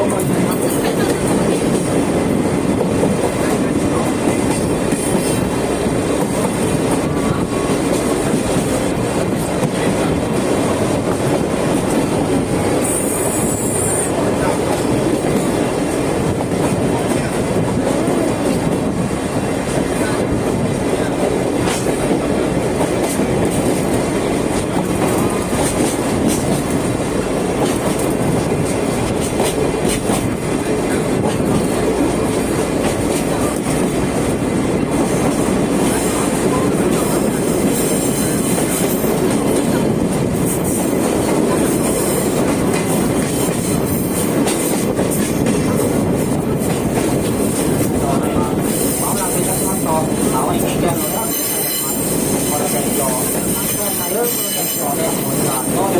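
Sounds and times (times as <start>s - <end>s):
train carriage rumbling on rails: 0.0s - 55.9s
wheels clacking over rail joints: 21.0s - 48.0s.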